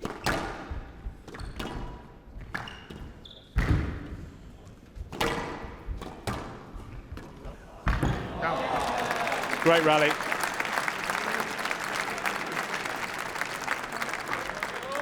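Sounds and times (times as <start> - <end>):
squash ball hit by rackets: 0.0 - 4.3, 5.1 - 8.2.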